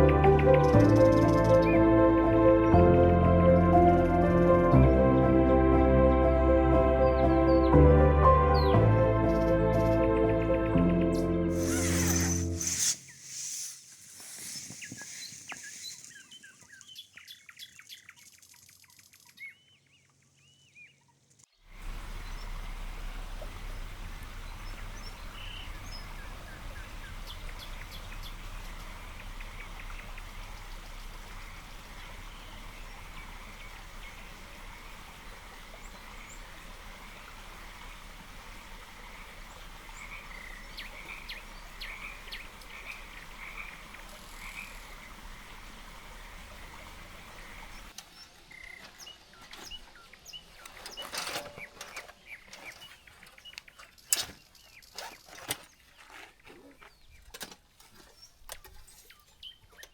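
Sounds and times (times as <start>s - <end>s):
birds chirping: 0.0s - 4.8s, 6.8s - 57.4s
frogs calling: 23.6s - 47.9s.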